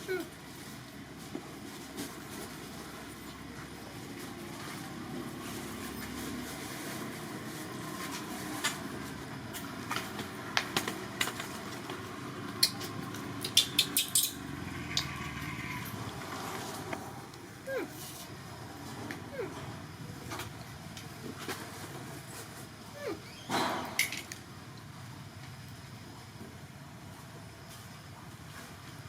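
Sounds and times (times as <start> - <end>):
steady background noise: 0.0 - 29.0.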